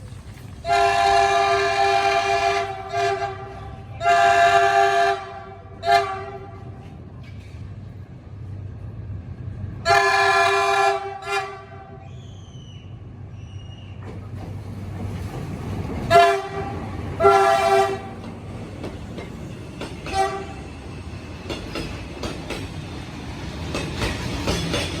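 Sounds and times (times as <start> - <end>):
freight train rumble: 0.0 - 25.0
locomotive horn blasts: 0.6 - 6.7, 9.8 - 12.0, 16.1 - 18.2, 20.1 - 20.6.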